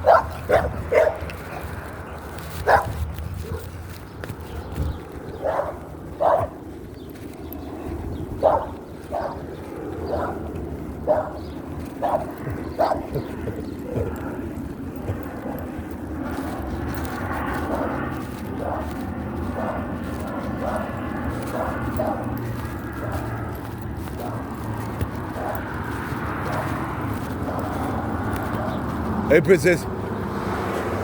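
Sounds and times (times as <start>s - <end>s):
dogs barking: 0.0s - 30.2s.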